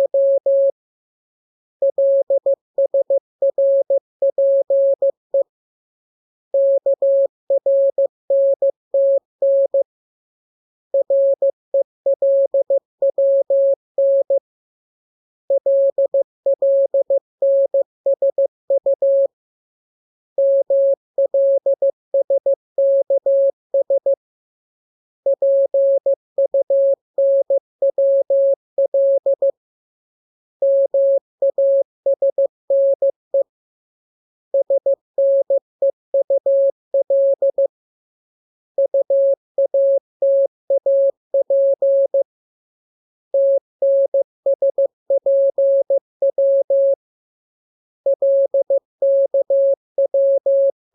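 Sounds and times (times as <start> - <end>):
morse code tone: 48.1 - 50.7.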